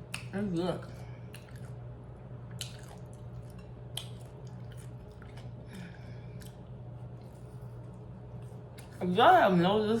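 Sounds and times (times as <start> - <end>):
steady low hum: 0.0 - 10.0
chewing mouth sounds: 1.2 - 9.0.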